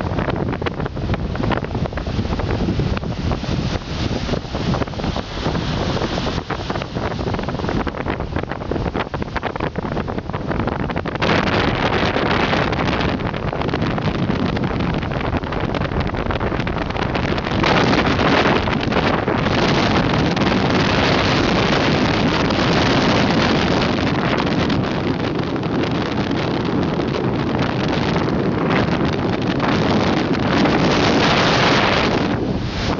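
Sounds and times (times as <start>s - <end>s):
wind blasting across microphone: 0.0s - 32.9s.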